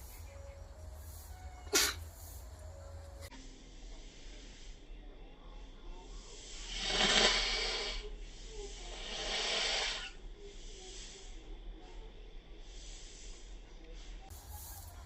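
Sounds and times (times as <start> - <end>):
person blowing nose: 1.7 - 2.2.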